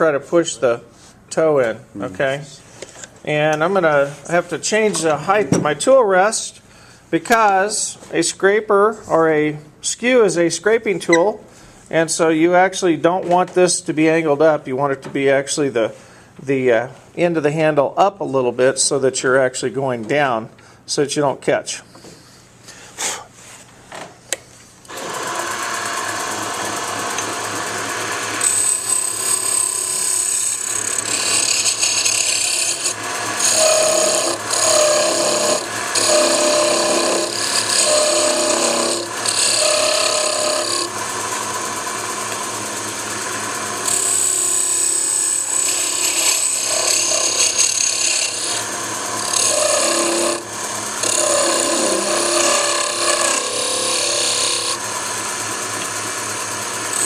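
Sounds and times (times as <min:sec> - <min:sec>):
chisel scraping spinning wood: 0:24.9 - 0:57.0
wood lathe running: 0:24.9 - 0:57.0.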